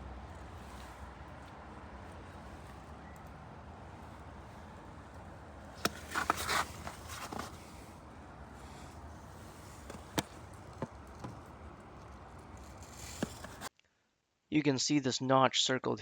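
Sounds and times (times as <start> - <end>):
plastic scraping and rattling: 5.7 - 13.7.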